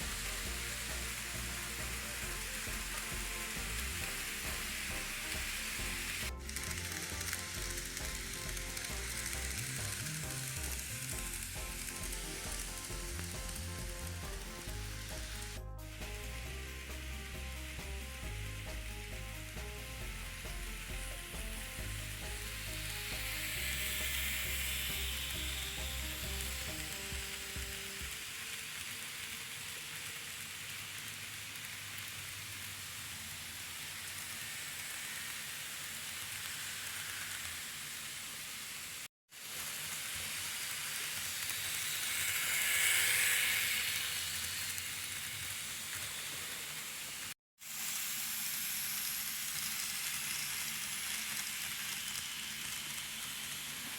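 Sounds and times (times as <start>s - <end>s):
soft music with low beat: 0.0s - 28.2s
model train wheels on rail: 0.0s - 53.9s.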